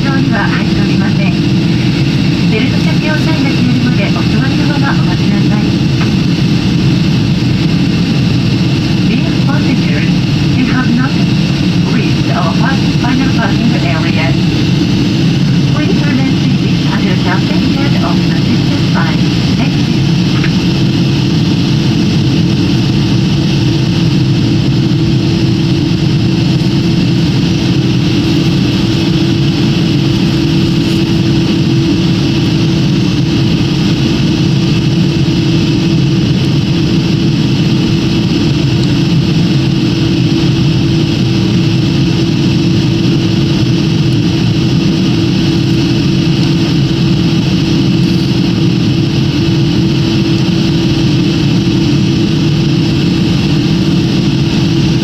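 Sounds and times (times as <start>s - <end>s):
jet airliner cabin noise: 0.0s - 55.0s.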